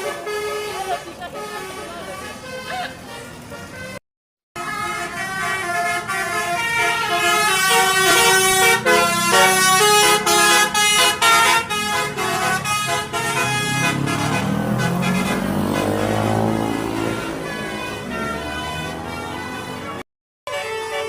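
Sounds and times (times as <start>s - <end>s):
musical air horn playing a tune: 4.6s - 21.0s.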